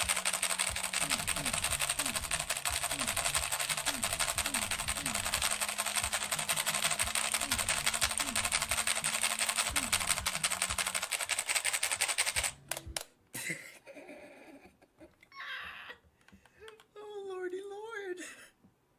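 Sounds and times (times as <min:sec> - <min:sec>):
fast typing on mechanical keyboard: 0:00.0 - 0:13.0.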